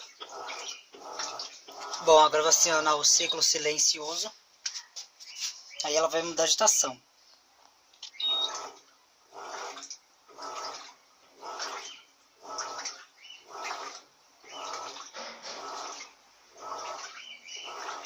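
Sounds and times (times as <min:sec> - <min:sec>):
washing machine swishing water: 0:00.0 - 0:05.6, 0:08.3 - 0:18.0.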